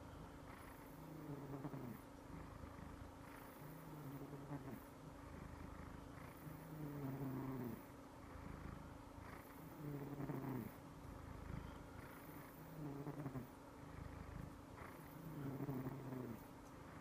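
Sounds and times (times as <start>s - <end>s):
cat snoring: 0.0s - 17.0s.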